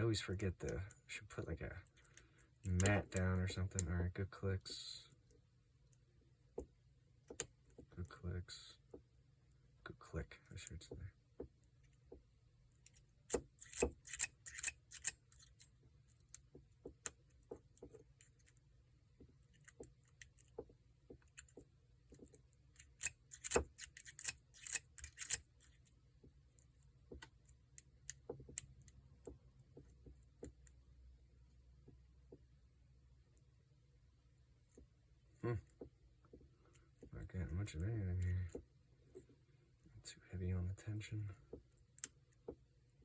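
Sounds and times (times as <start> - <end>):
lock pick metallic clicks: 12.8 - 17.4, 22.2 - 25.8.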